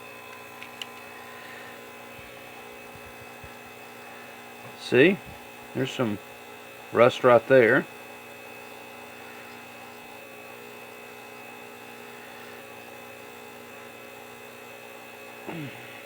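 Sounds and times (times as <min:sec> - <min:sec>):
electrical hum: 0:00.0 - 0:16.0
man murmuring: 0:15.5 - 0:15.9.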